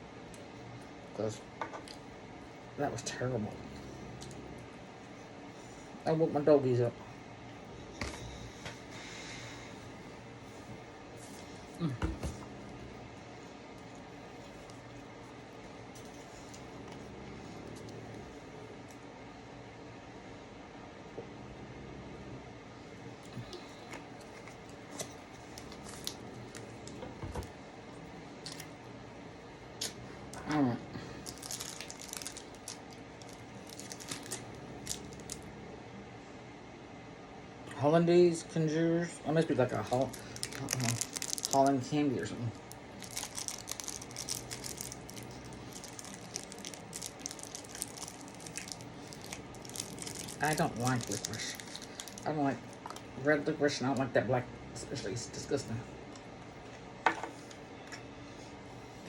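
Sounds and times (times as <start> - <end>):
snack packaging crinkling: 13.8 - 18.0, 23.3 - 27.5, 28.4 - 28.8, 29.8 - 35.5, 39.6 - 53.2
candy clicks and rustles: 23.4 - 27.5, 29.8 - 35.4, 39.5 - 53.2.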